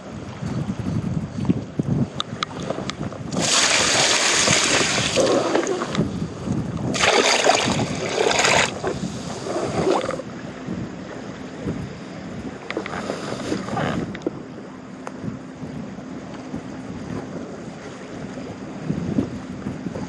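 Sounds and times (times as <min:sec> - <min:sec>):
water splashing: 0:03.3 - 0:06.0, 0:06.9 - 0:10.2.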